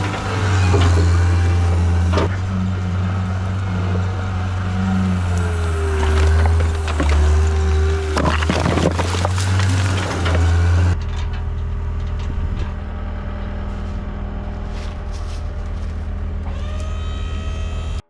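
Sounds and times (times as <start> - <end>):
diesel engine running under load: 0.0 - 18.0
dirt and concrete scraping: 5.4 - 11.0, 13.6 - 17.1.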